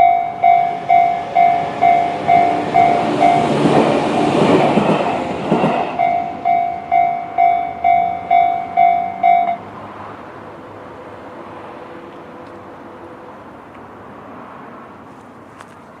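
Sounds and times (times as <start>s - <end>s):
repeating pitched ding: 0.0s - 3.5s, 6.0s - 9.6s.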